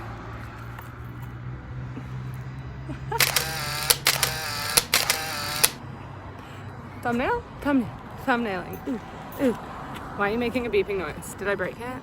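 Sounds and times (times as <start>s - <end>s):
sharp clicks: 3.2s - 5.8s.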